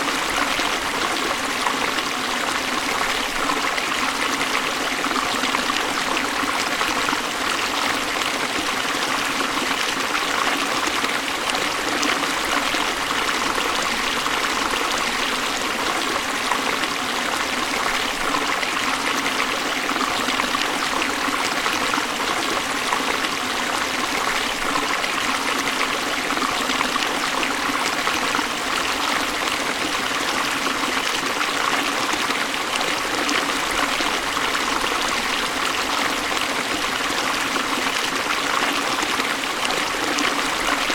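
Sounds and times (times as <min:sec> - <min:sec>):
water rushing over falls: 0:00.0 - 0:40.9.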